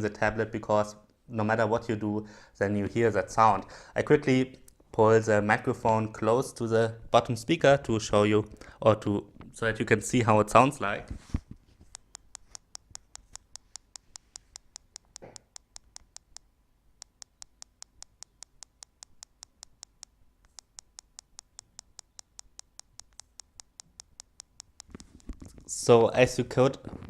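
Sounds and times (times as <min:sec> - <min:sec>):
tablet speaker clicking: 0:11.2 - 0:25.8.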